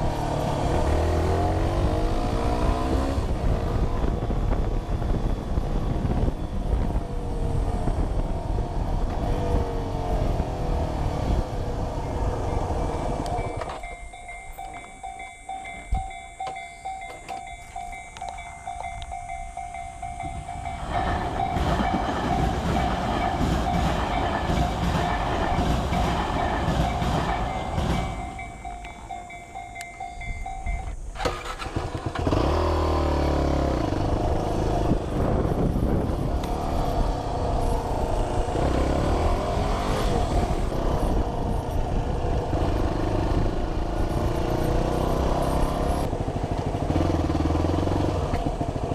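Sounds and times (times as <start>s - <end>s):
vehicle engines revving: 0.0s - 13.8s, 31.2s - 48.9s
motorcycle engine: 0.0s - 14.9s, 31.0s - 48.9s
electric train rumbling: 0.0s - 48.9s
railway crossing bell ringing: 11.8s - 31.6s.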